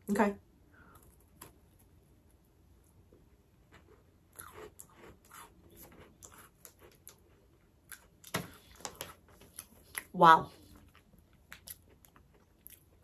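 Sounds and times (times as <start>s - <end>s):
person chewing crunchy biscuit: 3.5s - 13.0s.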